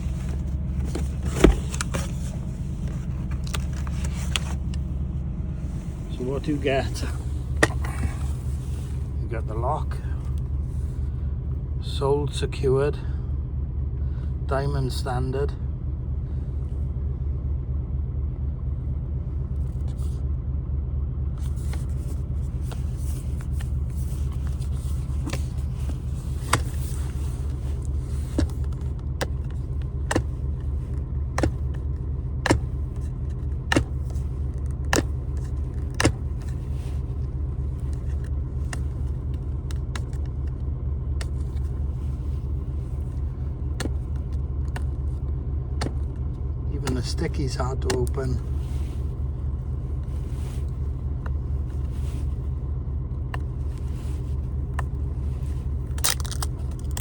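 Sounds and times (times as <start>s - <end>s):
low rumble: 0.0s - 57.0s
packaging clicks and crackles: 55.8s - 57.0s.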